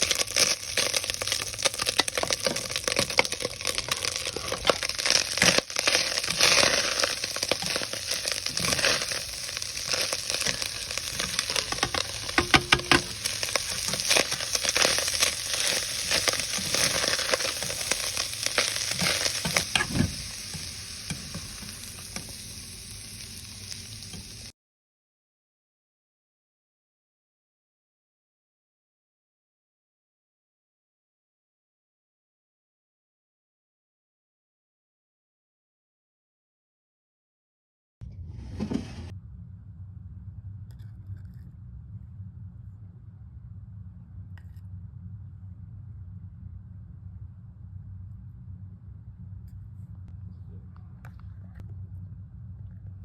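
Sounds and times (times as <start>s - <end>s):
food sizzling in a hot pan: 0.0s - 24.5s
stirring in a pan: 0.0s - 24.5s.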